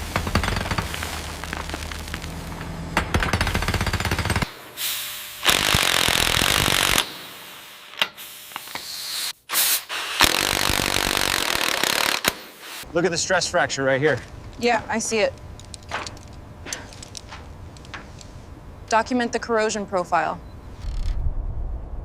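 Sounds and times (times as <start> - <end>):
jackhammer hammering: 0.0 - 4.6, 5.4 - 7.3, 10.1 - 12.6
low machine hum: 0.0 - 5.5, 12.9 - 22.0
power tool cutting hiss: 4.6 - 12.9.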